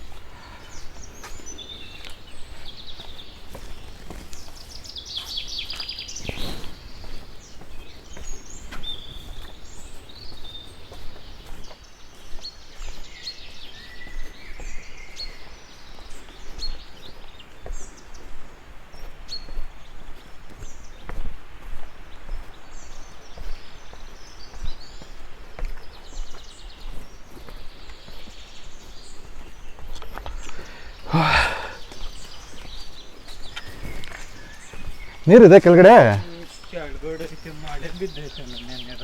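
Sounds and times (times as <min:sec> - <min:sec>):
birds chirping and trilling: 0:00.0 - 0:11.7.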